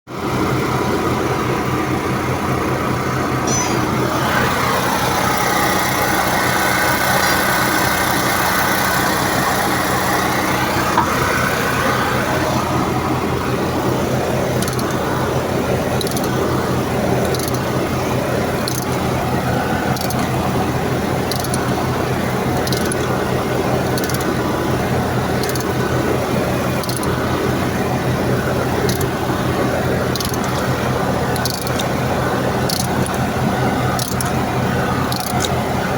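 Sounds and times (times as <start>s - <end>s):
machinery humming: 0.9s - 35.9s
high-pitched whine: 3.3s - 8.6s.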